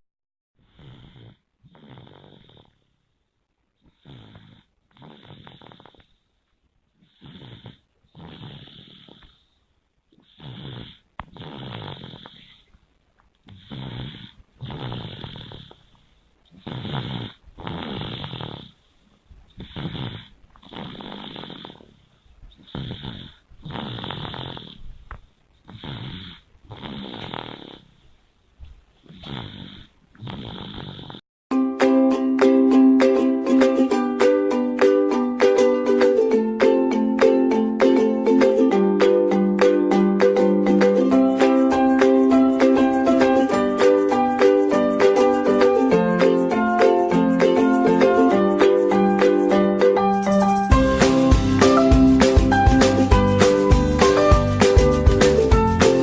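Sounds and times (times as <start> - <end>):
child snoring: 0.6 - 2.9, 3.8 - 6.2, 7.0 - 12.7, 13.5 - 18.9, 19.5 - 28.1, 29.0 - 31.2.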